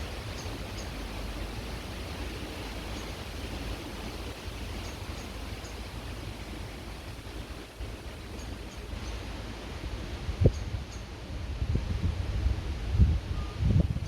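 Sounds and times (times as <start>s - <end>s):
creek water running: 0.0s - 11.6s
wind rumble on microphone: 0.0s - 14.0s.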